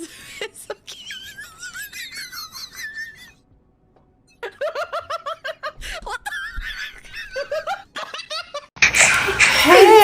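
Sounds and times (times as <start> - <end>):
person laughing high-pitched: 0.0 - 3.4, 4.4 - 8.7.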